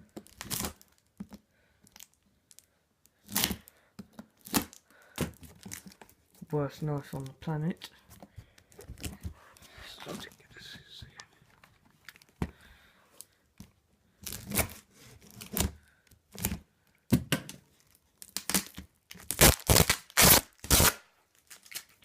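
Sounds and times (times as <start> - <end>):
cardboard and tape tearing: 0.2 - 1.0, 3.2 - 3.7, 4.4 - 6.1, 14.2 - 16.6, 18.2 - 22.0.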